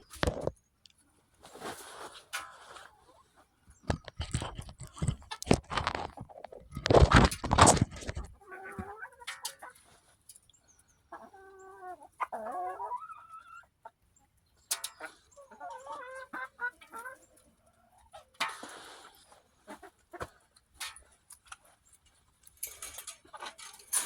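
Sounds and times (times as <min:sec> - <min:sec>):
hens clucking: 0:00.0 - 0:00.5, 0:02.5 - 0:10.0, 0:11.1 - 0:14.1, 0:14.7 - 0:21.8.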